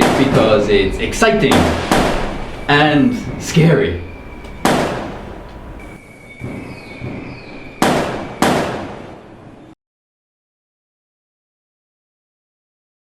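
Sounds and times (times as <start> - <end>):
fireworks exploding: 0.4 - 6.0.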